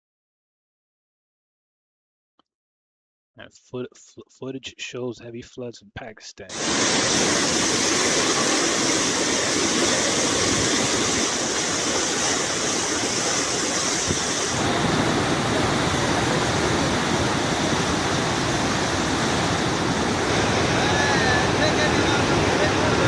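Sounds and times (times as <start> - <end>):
floodwater rushing: 6.5 - 23.0.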